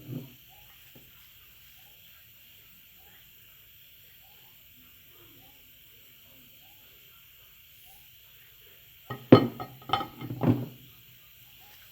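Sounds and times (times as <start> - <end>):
hard objects clinking together: 9.1 - 10.7.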